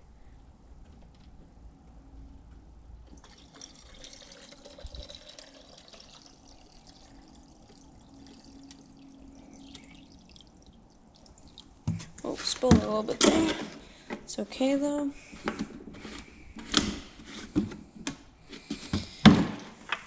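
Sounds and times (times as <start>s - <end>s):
liquid pouring into a tank: 3.1s - 11.9s.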